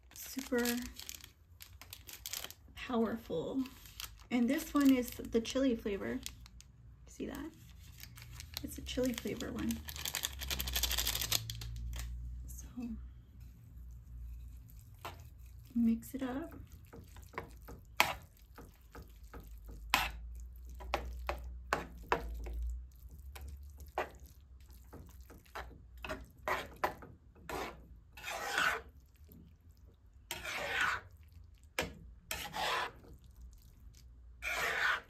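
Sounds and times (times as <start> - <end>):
utensil scraping noodles in pan: 13.4 - 15.9, 16.5 - 29.4, 30.2 - 33.8, 34.4 - 35.0.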